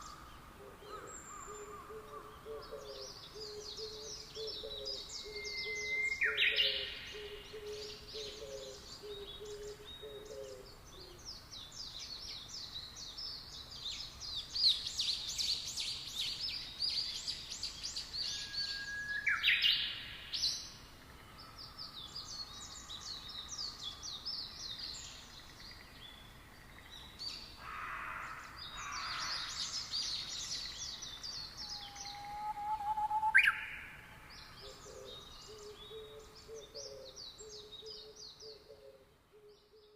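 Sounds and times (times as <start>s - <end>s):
low hooting bird call: 0.0s - 11.2s, 31.6s - 39.8s
sweeping bird calls: 0.0s - 39.9s.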